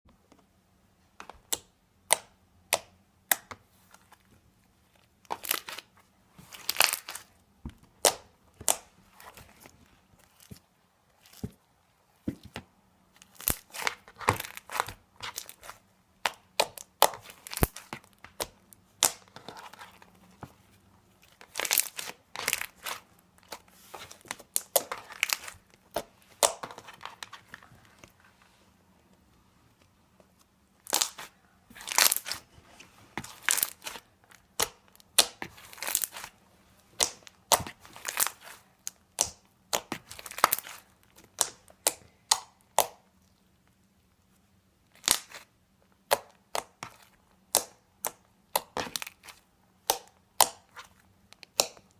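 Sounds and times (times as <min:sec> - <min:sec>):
slime popping and crackling: 0:06.5 - 0:07.3, 0:13.2 - 0:19.4, 0:24.2 - 0:27.3, 0:30.8 - 0:32.4, 0:33.2 - 0:36.3, 0:37.0 - 0:43.1, 0:44.9 - 0:50.8.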